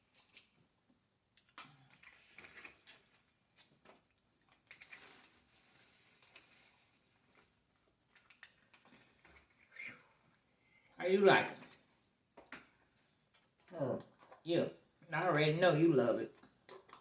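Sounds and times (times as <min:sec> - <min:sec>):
eating clicks and crunches: 0:01.3 - 0:05.1, 0:16.3 - 0:17.0
soft rustle: 0:01.8 - 0:10.8.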